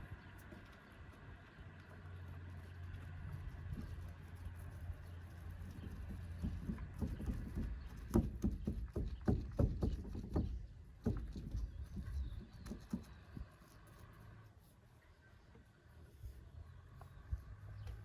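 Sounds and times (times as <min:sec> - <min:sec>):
dull knocks and thumps: 0:05.6 - 0:13.4.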